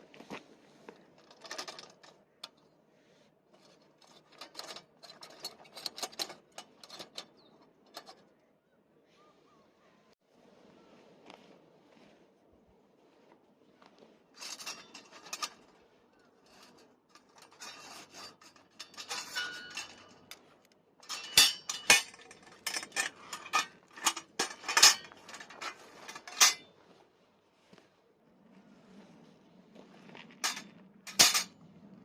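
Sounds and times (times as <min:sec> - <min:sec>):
utensils clicking and clinking: 0:04.0 - 0:07.3, 0:16.6 - 0:20.4, 0:21.0 - 0:26.6, 0:30.4 - 0:31.5
cookware rubbing and scraping: 0:16.4 - 0:20.4, 0:21.0 - 0:26.6.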